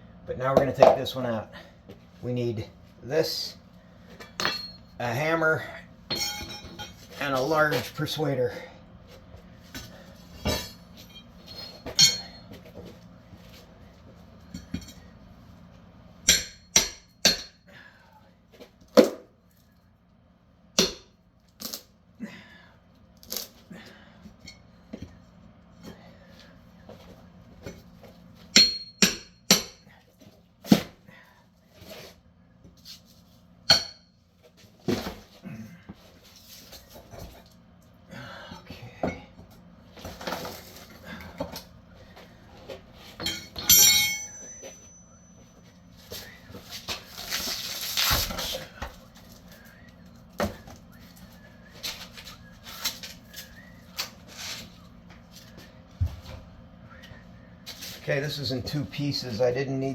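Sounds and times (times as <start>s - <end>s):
hammer striking steel bar: 4.4s - 4.8s, 6.1s - 6.9s, 12.0s - 12.4s, 16.3s - 17.6s, 20.8s - 21.1s, 28.6s - 29.8s, 33.7s - 34.0s, 43.2s - 45.0s.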